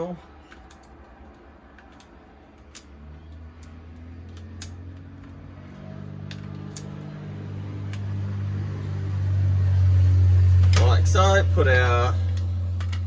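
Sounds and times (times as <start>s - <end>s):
mechanical hum: 0.0s - 13.0s
plastic parts clicking and tapping: 0.4s - 5.4s.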